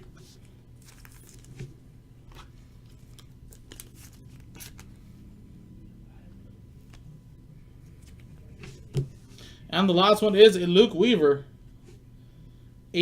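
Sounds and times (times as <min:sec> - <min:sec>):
cards rustling and clicking: 0:00.0 - 0:05.0.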